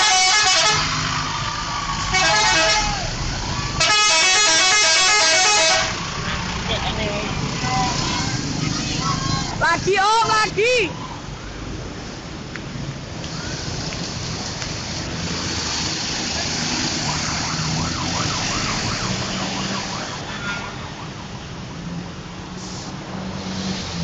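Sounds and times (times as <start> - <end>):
bus engine running: 0.0 - 24.0
traffic noise: 0.0 - 24.0
faint warbling siren-like tone: 17.0 - 21.4.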